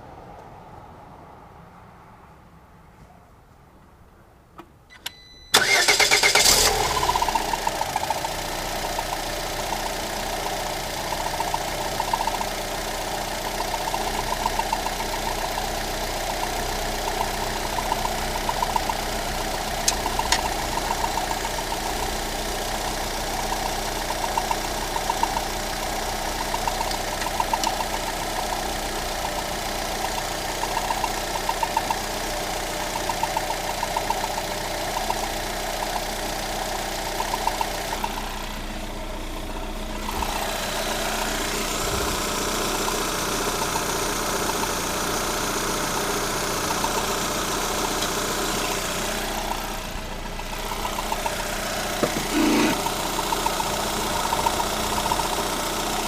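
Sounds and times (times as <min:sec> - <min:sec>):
car engine idling: 0:05.5 - 0:56.0
rhythmic grinding scrape: 0:52.0 - 0:52.9.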